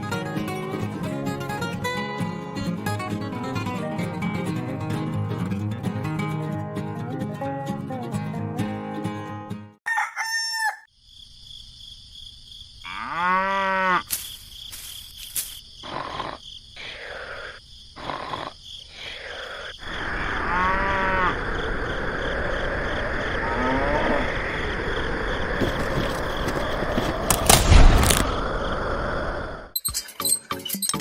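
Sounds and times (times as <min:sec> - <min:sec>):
rooster crowing: 0:09.8 - 0:10.9
farm animal calls: 0:15.8 - 0:21.5.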